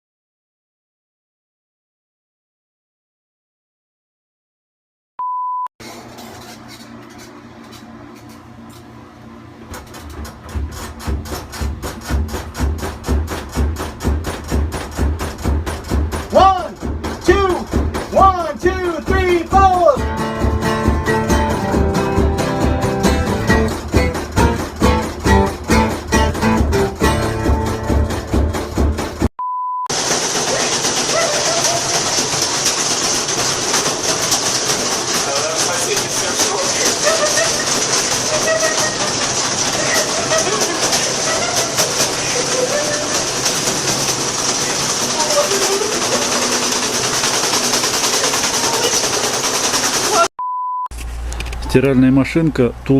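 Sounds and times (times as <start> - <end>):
short steady beep: 5.2 - 5.7, 29.4 - 29.9, 50.4 - 50.9
washing machine humming: 5.8 - 29.3, 29.9 - 50.3
heavy low thumps with clicks: 11.6 - 21.4
strummed guitar music: 19.6 - 29.3.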